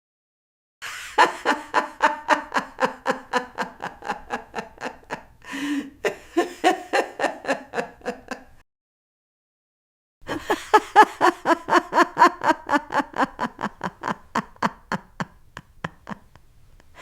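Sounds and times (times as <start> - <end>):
old woman laughing: 0.8 - 8.6, 10.2 - 17.0
drawn breath: 5.4 - 6.0.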